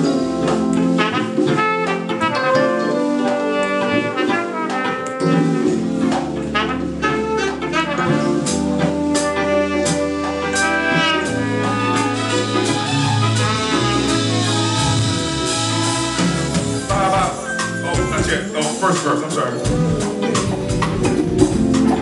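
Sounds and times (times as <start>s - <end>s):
bass line: 0.0s - 18.5s, 19.6s - 22.0s
drum hits: 0.0s - 22.0s
jazz horns: 0.0s - 22.0s.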